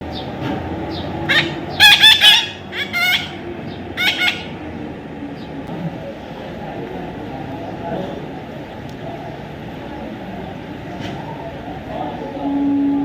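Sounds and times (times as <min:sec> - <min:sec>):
parrot squawking: 0:01.3 - 0:04.6.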